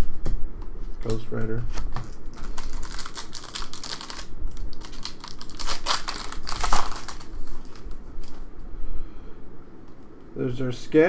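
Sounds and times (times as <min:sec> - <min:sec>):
trading cards rustling and clicking: 0:01.0 - 0:08.4.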